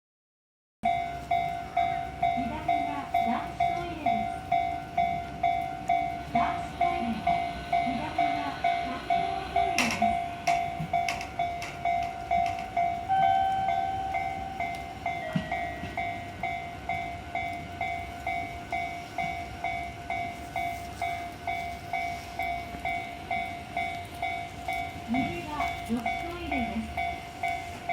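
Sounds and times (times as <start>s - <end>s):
level crossing warning bell: 0.8s - 27.9s
steady held tone: 4.3s - 16.6s.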